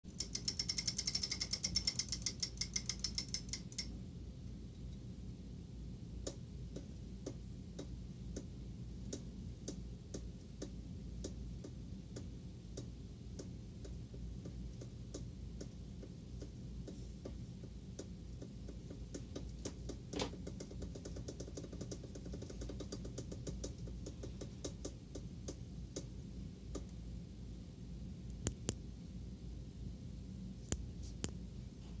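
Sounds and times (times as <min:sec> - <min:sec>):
freewheel ratchet clicking: 0:00.1 - 0:03.9
rhythmic mechanical ticking: 0:00.1 - 0:03.9.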